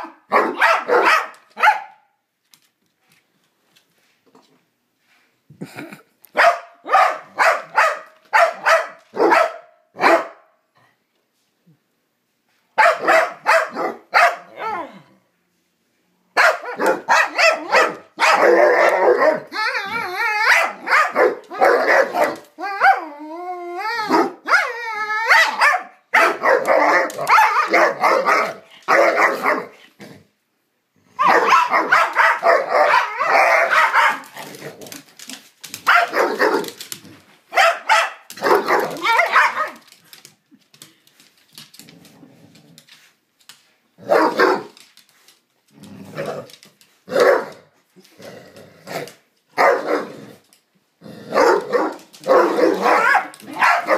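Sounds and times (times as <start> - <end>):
dogs barking and growling: 0.0 - 2.0, 12.8 - 15.2, 16.4 - 30.4, 31.0 - 40.3, 44.0 - 45.0, 45.7 - 53.9.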